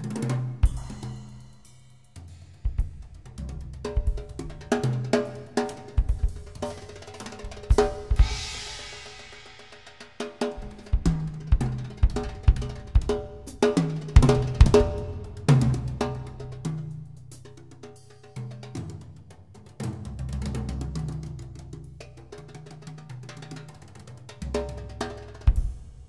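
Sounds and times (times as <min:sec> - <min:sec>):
drum kit kick and snare: 0:00.0 - 0:17.8, 0:24.5 - 0:26.0
cymbal crash: 0:07.9 - 0:11.0.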